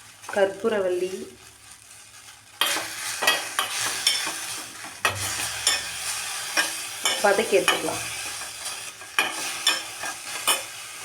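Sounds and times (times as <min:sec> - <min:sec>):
leaves sizzling in a pan: 0:00.0 - 0:11.0
spatula scraping and stirring: 0:02.3 - 0:11.0.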